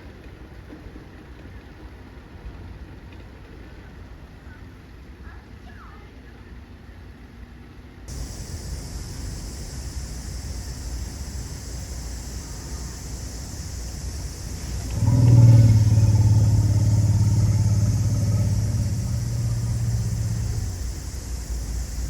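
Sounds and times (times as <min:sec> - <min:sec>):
elephant growling: 0:11.3 - 0:22.0.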